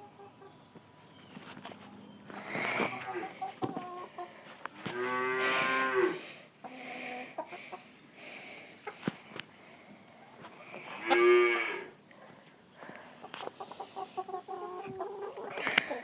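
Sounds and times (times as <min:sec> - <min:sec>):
cow mooing: 0:04.9 - 0:06.2, 0:11.0 - 0:11.9.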